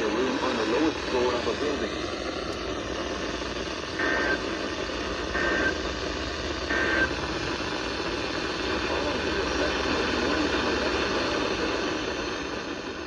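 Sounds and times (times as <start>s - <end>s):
radio static hiss: 0.0s - 13.0s
digital data tone bursts: 3.9s - 4.6s, 5.2s - 5.9s, 6.6s - 7.4s.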